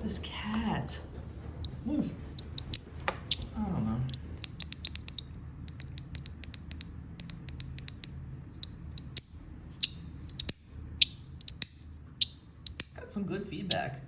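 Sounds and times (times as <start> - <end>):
fidget clicker clicking: 2.4 - 13.0.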